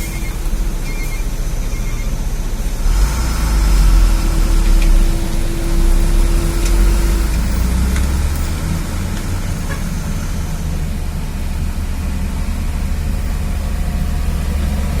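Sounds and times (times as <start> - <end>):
steady whine: 0.0 - 15.0
truck engine rumbling under load: 0.0 - 15.0.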